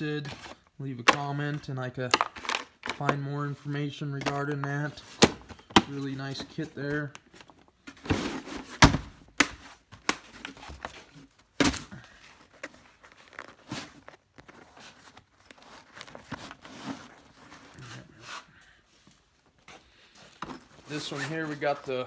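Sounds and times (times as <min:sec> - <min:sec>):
clicks and knocks of tools: 0:02.1 - 0:03.2
rustling: 0:04.9 - 0:22.0.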